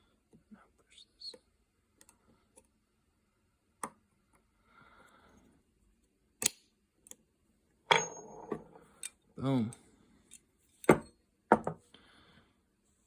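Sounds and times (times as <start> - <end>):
metal pistol parts clicking: 6.4 - 7.2.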